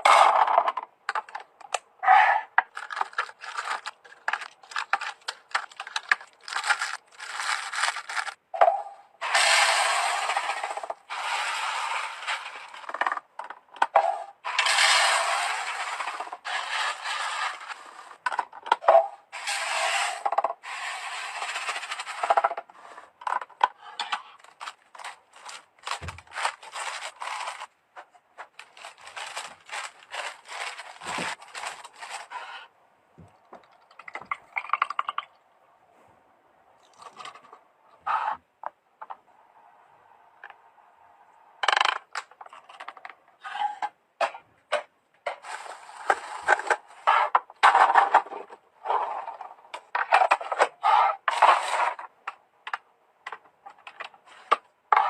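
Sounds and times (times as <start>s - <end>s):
plastic containers clattering: 0.0s - 1.8s, 2.5s - 9.4s, 12.0s - 20.6s, 21.4s - 35.3s
packaging rustling and scraping: 2.6s - 8.4s, 14.5s - 18.4s, 19.4s - 32.7s, 45.3s - 49.4s.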